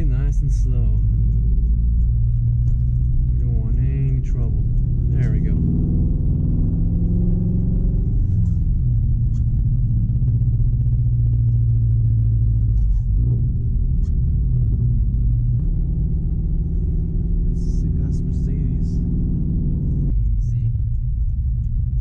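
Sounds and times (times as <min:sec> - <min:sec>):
car engine droning in cabin: 0:00.0 - 0:22.0.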